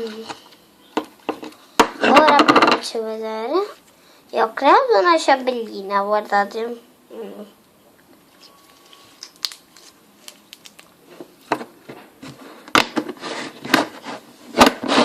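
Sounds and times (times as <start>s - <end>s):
slime squeezed by hand: 8.4s - 11.0s.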